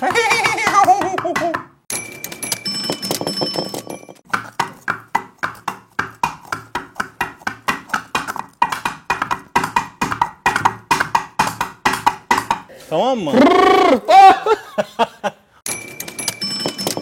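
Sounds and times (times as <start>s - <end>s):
hollow clopping hoof knocks: 4.2s - 12.7s.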